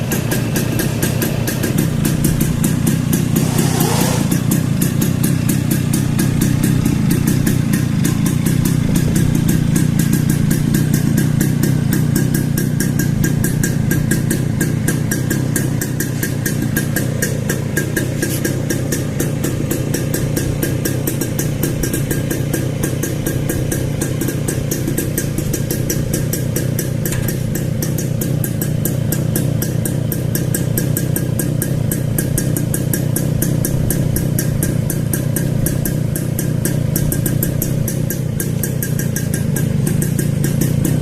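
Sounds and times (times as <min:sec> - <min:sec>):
two-stroke motorcycle engine idling: 0:00.0 - 0:41.0.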